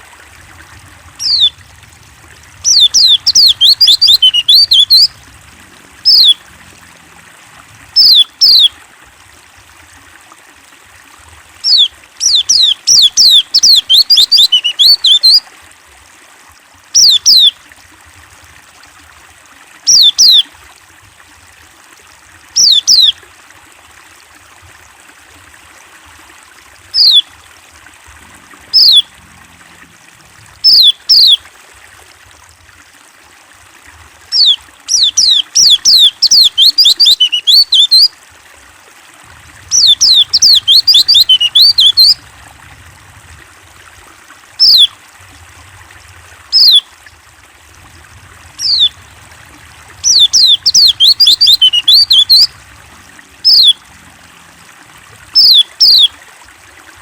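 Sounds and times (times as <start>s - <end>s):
running water hiss: 0.0s - 57.0s
bird rapid twittering: 1.2s - 1.5s, 2.6s - 5.2s, 6.0s - 6.4s, 8.0s - 8.7s, 11.6s - 15.4s, 17.0s - 17.5s, 19.9s - 20.4s, 22.6s - 23.1s, 27.0s - 27.2s, 28.8s - 29.0s, 30.6s - 31.4s, 34.3s - 38.1s, 39.7s - 42.2s, 44.6s - 44.9s, 46.5s - 46.8s, 48.6s - 49.0s, 50.0s - 52.5s, 53.4s - 53.8s, 55.4s - 56.1s.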